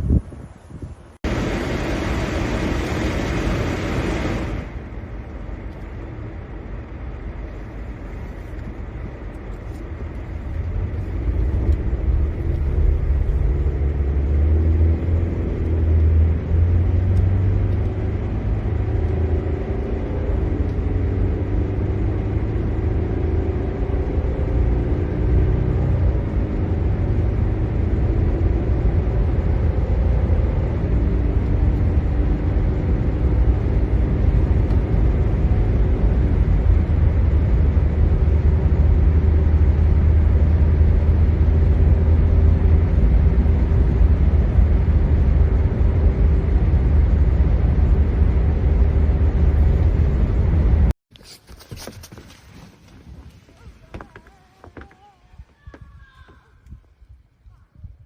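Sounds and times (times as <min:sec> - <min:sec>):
motor vehicle engine rumbling: 0:00.0 - 0:58.0.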